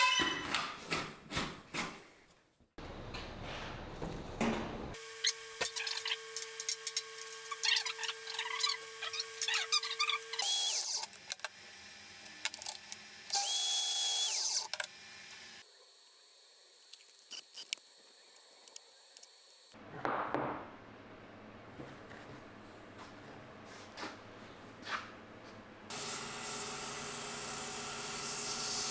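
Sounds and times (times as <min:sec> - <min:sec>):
power tool motor humming: 0:05.0 - 0:19.8, 0:25.9 - 0:28.9.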